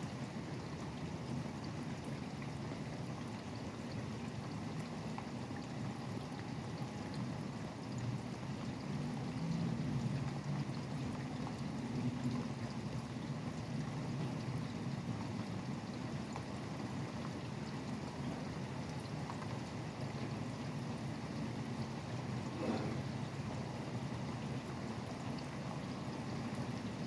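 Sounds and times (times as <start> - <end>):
low rumble of highway traffic: 0.0 - 27.0
steady rain falling: 0.1 - 27.0.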